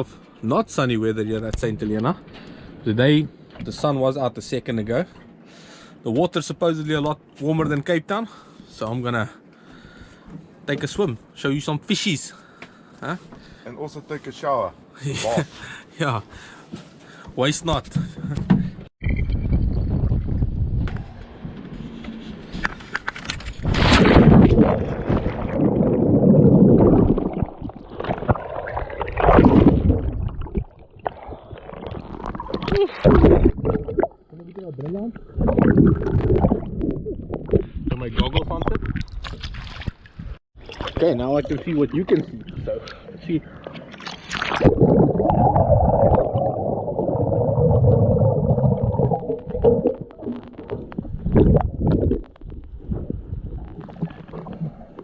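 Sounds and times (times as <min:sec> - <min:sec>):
water sloshing and gurgling: 0:21.8 - 0:55.0
underwater surges: 0:23.7 - 0:37.9, 0:40.6 - 0:55.0
underwater rushing and bubbles: 0:23.7 - 0:38.0, 0:39.9 - 0:55.0
clicks and pops: 0:35.2 - 0:37.7, 0:44.3 - 0:55.0.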